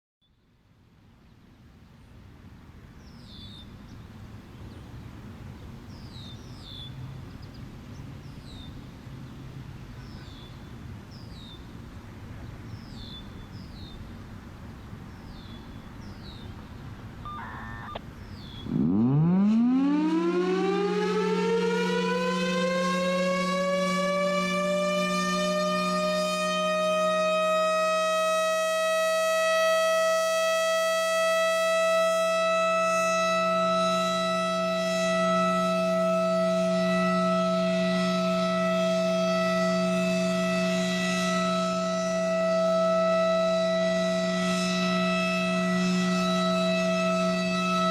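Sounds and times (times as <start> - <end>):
bird chirping: 15.1 - 18.7
siren wailing: 17.3 - 18.0, 18.7 - 47.9.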